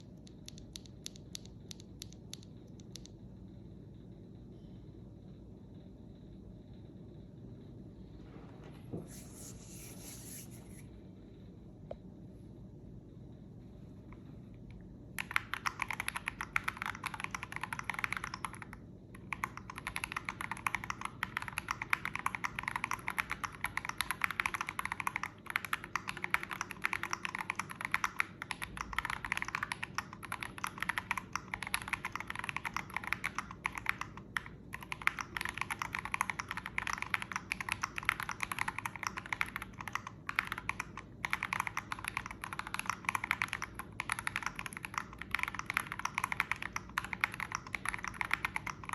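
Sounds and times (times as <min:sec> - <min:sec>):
fast mechanical keyboard typing: 0:15.2 - 0:48.9.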